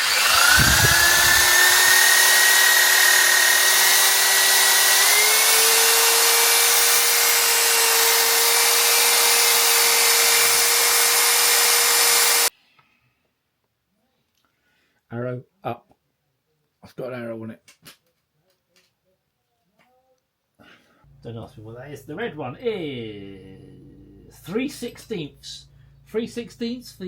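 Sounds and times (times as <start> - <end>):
power tool running: 0.0 - 12.5.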